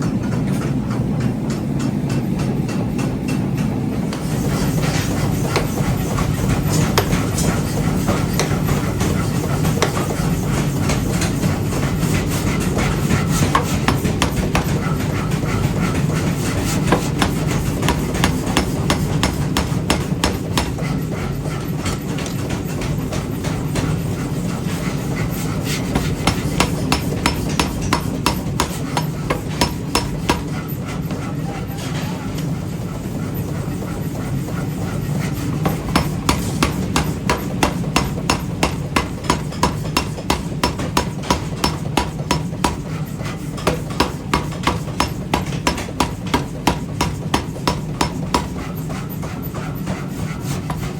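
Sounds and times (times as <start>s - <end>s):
hammer striking metal: 5.4s - 11.8s, 25.8s - 30.6s, 35.7s - 42.8s, 43.6s - 48.7s.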